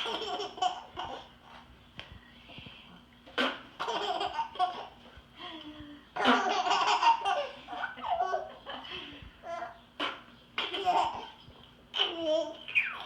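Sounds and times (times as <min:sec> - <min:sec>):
baby laughing: 0:00.0 - 0:01.4, 0:03.8 - 0:05.0, 0:06.2 - 0:08.7, 0:09.5 - 0:13.0.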